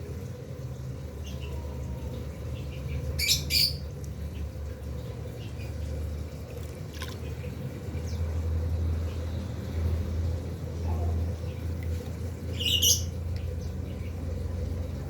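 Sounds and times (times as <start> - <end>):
sharp loud bird calls: 12.5 - 13.2.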